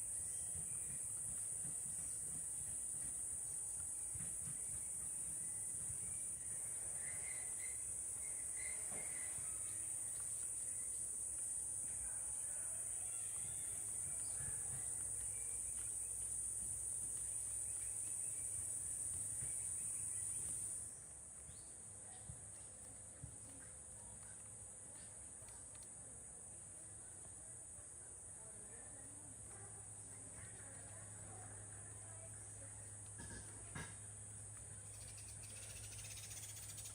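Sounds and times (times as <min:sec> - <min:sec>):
high-pitched insect chorus: 0:00.0 - 0:21.7, 0:33.7 - 0:36.9.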